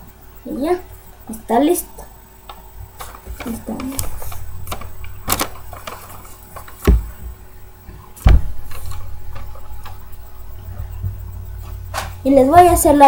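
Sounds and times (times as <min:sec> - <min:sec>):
knocks and thumps: 0:02.9 - 0:12.9.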